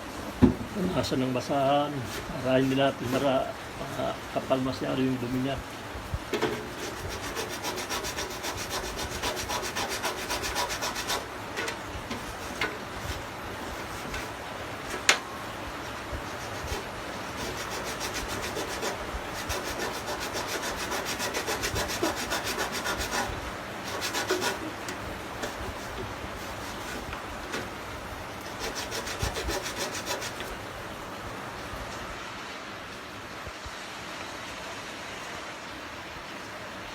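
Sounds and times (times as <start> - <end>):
scrubbing on metal: 6.3 - 15.2, 15.9 - 27.7, 28.4 - 30.6.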